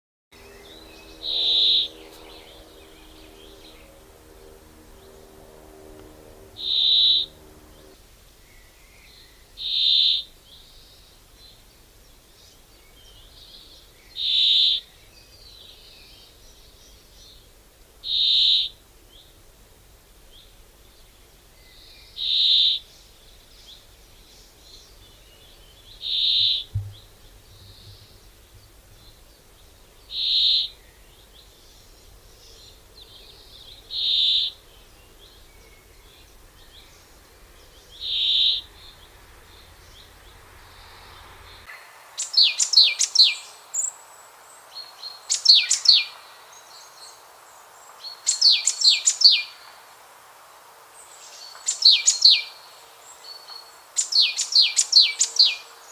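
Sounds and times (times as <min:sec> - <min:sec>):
bird high call: 0:00.4 - 0:08.0, 0:09.6 - 0:10.3, 0:14.2 - 0:14.9, 0:18.0 - 0:18.8, 0:26.0 - 0:28.0, 0:30.1 - 0:30.8, 0:33.9 - 0:34.6, 0:37.9 - 0:38.7
faint bird twittering: 0:00.4 - 0:11.6, 0:20.4 - 0:44.0, 0:51.0 - 0:55.9.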